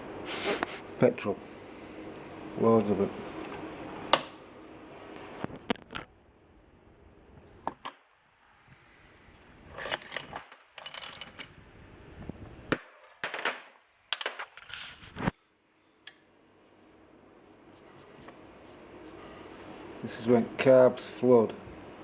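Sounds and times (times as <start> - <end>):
tools clicking and knocking: 9.8 - 11.5.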